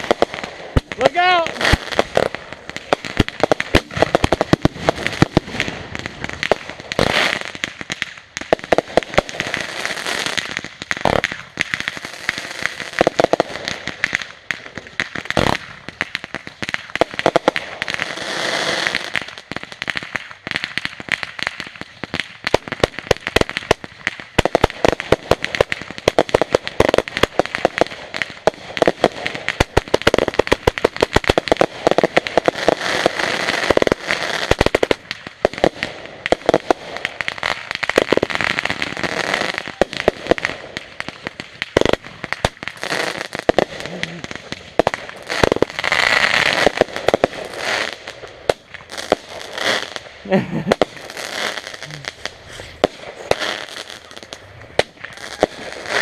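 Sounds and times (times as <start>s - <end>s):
firecrackers rattling: 0.0s - 56.0s.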